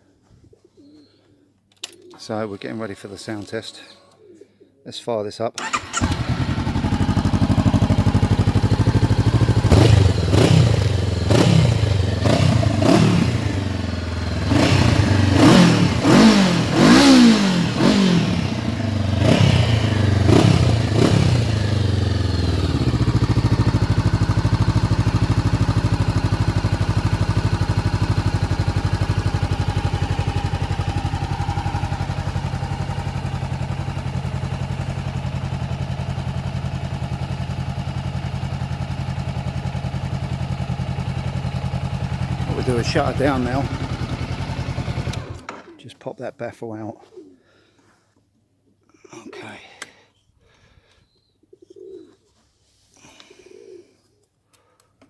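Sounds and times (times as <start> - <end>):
motorcycle engine revving: 5.6 - 45.7.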